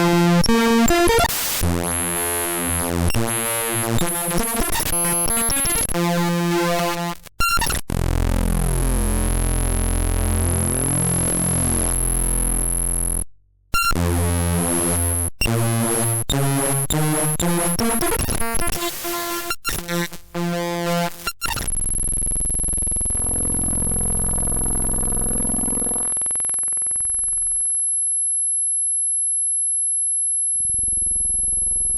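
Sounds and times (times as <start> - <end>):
harsh buzzy digital tones: 0.0 - 1.7.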